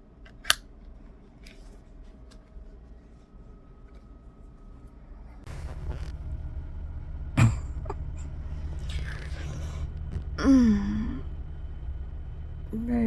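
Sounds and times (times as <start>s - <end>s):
steady low hum: 0.0s - 13.0s
woman sighing: 8.9s - 11.3s.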